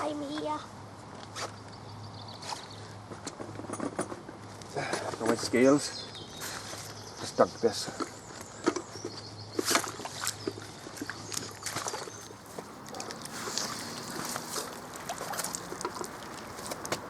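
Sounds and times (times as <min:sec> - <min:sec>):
small knocks and splashes: 0:07.8 - 0:17.0
water sloshing and dripping: 0:09.6 - 0:17.0.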